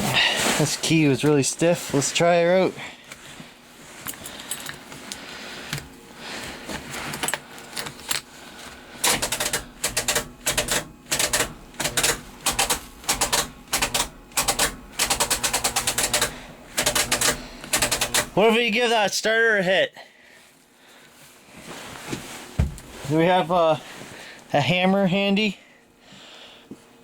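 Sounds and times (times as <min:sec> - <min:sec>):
starter clicking and chattering: 0:09.0 - 0:18.4.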